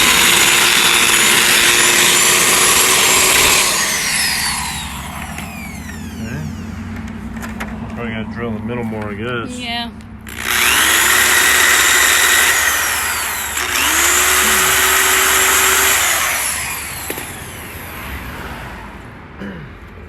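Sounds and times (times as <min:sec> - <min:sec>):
power drill drilling into plastic: 0:00.0 - 0:06.6, 0:10.3 - 0:18.0.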